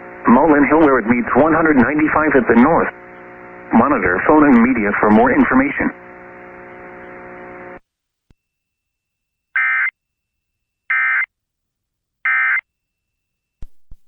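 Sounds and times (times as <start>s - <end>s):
steady hum: 0.0s - 7.8s.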